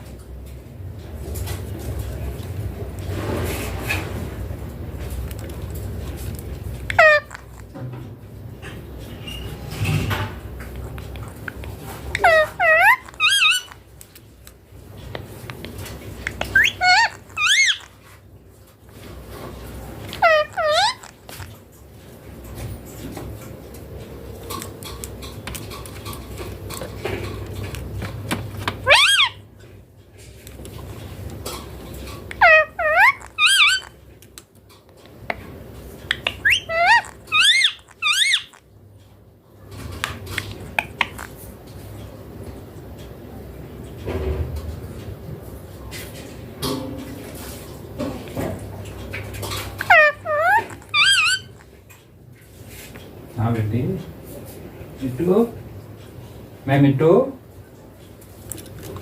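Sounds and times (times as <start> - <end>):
parakeet calls: 6.8 - 7.8, 11.4 - 13.9, 16.2 - 18.0, 20.1 - 21.5, 28.8 - 29.5, 32.3 - 34.0, 36.0 - 38.7, 40.3 - 41.4, 49.5 - 51.8.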